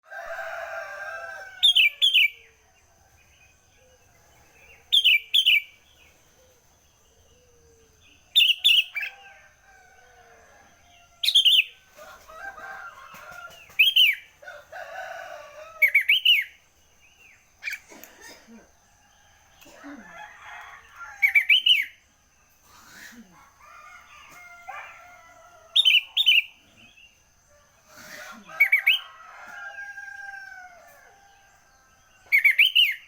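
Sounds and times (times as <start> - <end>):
bulbul singing: 4.6 - 9.2, 13.2 - 14.4.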